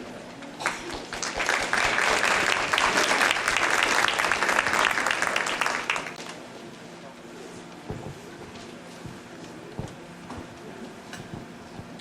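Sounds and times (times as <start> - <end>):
audience applauding: 0.6 - 6.2.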